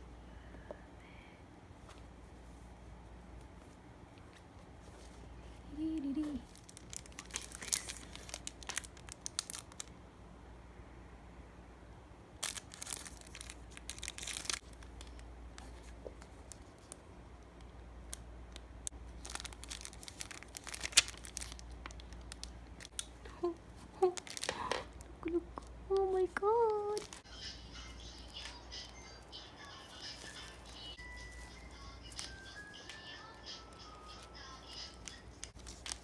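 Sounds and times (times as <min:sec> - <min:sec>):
packaging being torn open: 0:06.4 - 0:09.9, 0:12.4 - 0:15.2, 0:19.2 - 0:23.0.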